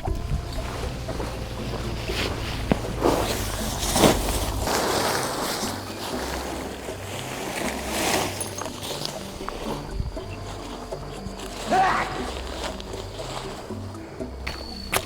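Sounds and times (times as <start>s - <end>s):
camping gear rustling: 0.0s - 15.0s.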